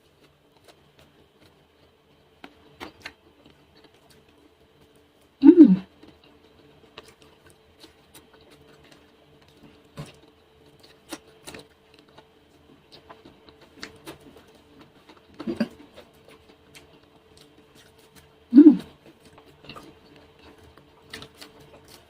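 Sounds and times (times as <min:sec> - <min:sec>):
faint steady hum: 0:00.0 - 0:22.0
chewing with mouth clicks: 0:00.1 - 0:05.0, 0:05.9 - 0:22.0
person humming hmm: 0:05.4 - 0:05.9, 0:18.5 - 0:18.9.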